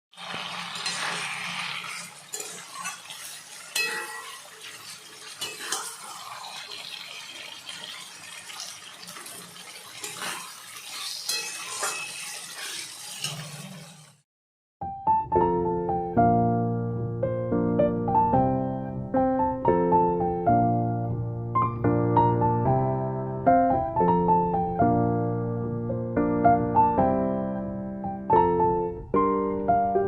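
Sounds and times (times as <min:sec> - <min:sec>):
metal utensils clinking on pots: 0:00.2 - 0:06.9, 0:07.8 - 0:13.9.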